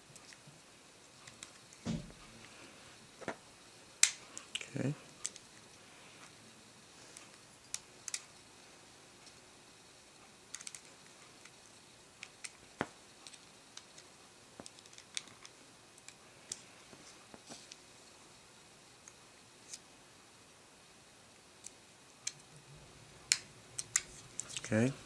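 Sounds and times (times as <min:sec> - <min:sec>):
screwdrivers clicking on small parts: 0:10.5 - 0:11.6, 0:23.3 - 0:24.7.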